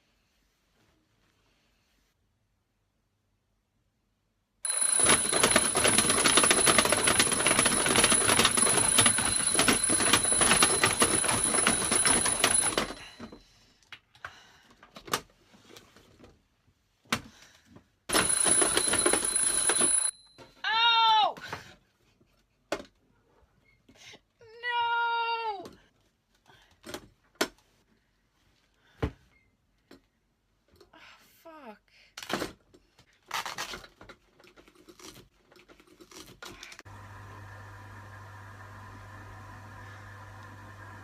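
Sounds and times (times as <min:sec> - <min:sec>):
alarm clock bell ringing: 0:04.7 - 0:13.3, 0:18.1 - 0:20.4.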